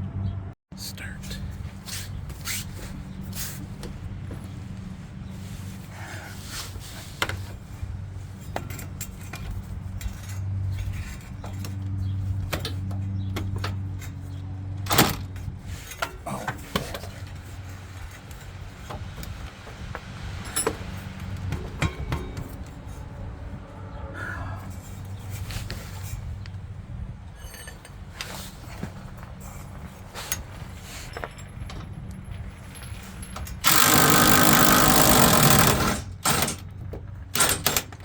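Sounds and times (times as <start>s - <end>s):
low hum: 7.6s - 35.8s
tools clinking against metal: 8.4s - 23.1s, 27.3s - 38.0s.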